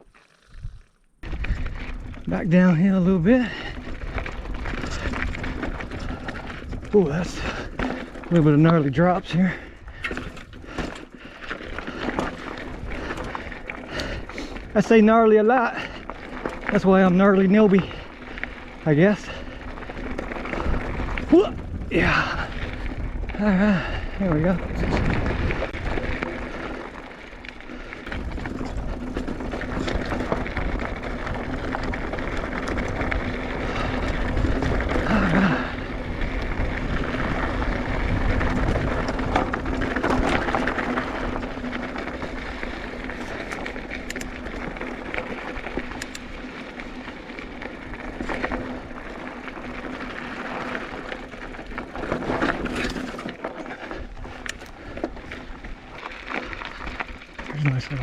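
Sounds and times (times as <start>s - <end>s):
bike rattling: 0.0s - 58.0s
bike tyres crunching over stones: 0.0s - 58.0s
bike knocking over rocks: 37.1s - 58.0s.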